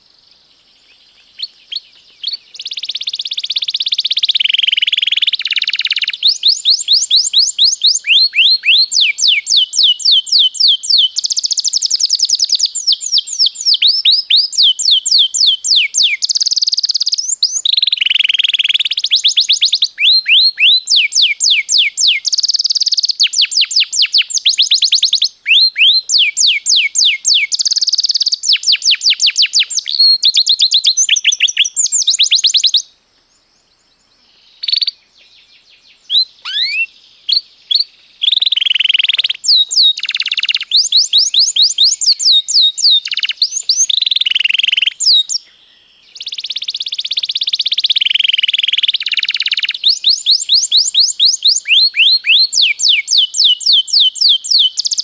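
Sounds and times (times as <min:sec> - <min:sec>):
canary singing trills: 0:00.8 - 0:32.9, 0:34.3 - 0:55.0.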